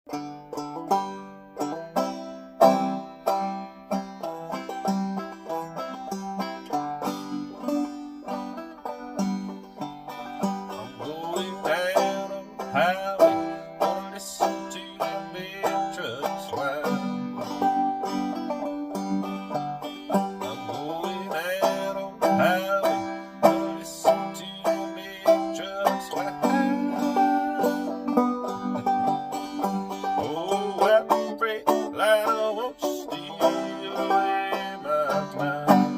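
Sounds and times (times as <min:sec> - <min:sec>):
banjo played clawhammer style: 0:00.1 - 0:35.9.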